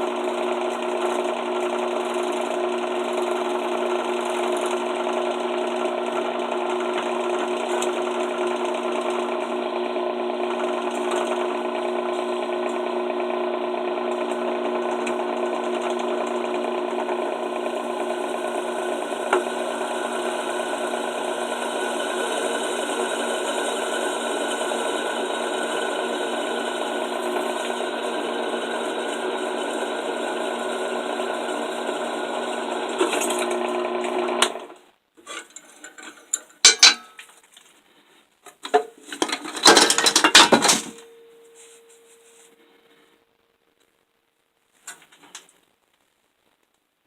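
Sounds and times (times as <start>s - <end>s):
drill press motor running: 0.0s - 34.8s
metal clattering: 35.2s - 37.4s, 38.6s - 41.2s.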